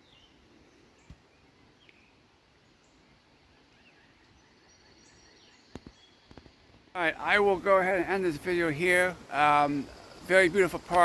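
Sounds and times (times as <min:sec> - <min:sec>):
faint bird chirps: 0:00.0 - 0:06.8.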